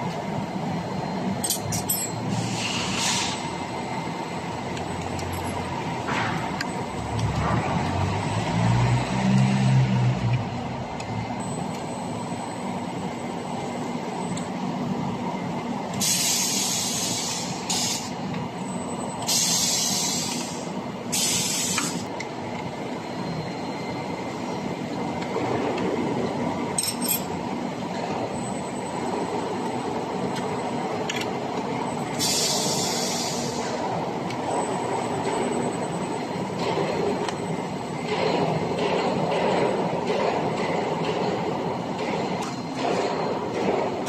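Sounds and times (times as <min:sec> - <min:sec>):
duct forming machine running: 0:22.1 - 0:44.0.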